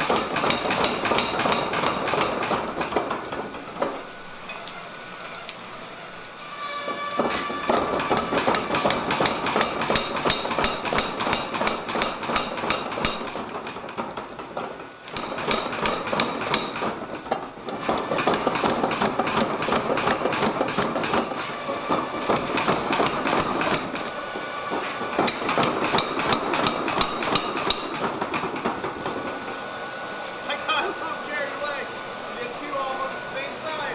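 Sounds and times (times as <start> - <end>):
power hammer pounding steel: 0.0 - 4.0, 7.0 - 14.2, 15.1 - 29.4.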